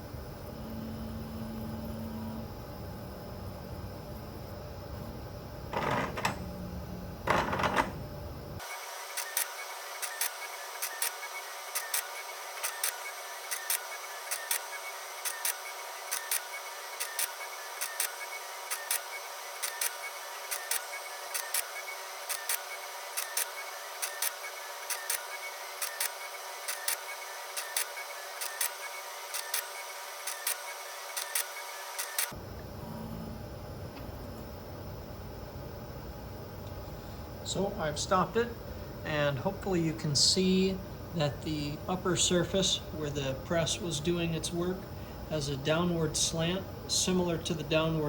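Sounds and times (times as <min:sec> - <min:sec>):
electric motor whine: 0:00.0 - 0:04.1, 0:05.0 - 0:35.2
sharp mechanical ticks: 0:09.2 - 0:19.0, 0:19.6 - 0:21.7, 0:23.2 - 0:25.2, 0:25.8 - 0:32.3
rasping machine movements: 0:09.2 - 0:32.3.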